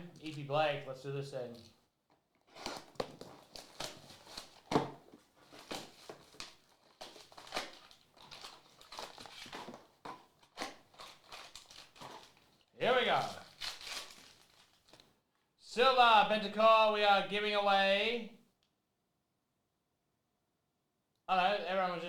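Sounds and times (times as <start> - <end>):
plastic wrapping tearing and crinkling: 0.0 - 0.5, 2.4 - 15.0.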